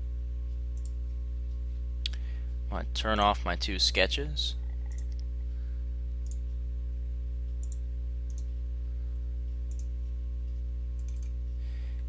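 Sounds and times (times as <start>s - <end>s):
low electrical hum: 0.0s - 12.0s
faint computer mouse clicks: 9.7s - 9.9s, 11.0s - 11.4s.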